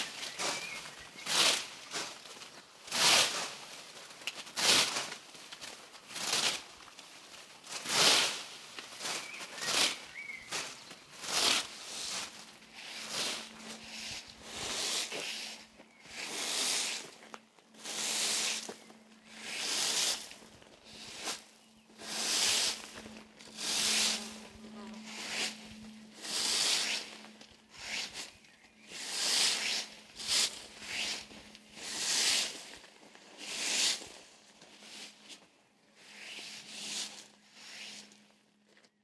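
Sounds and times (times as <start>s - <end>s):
hedge hook swishing through leaves: 0.0s - 15.6s, 17.8s - 32.8s.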